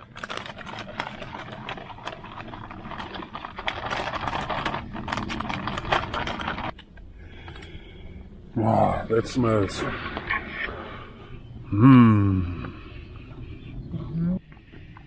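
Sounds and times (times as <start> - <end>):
clicking and crinkling of packaging: 0.0 - 7.7.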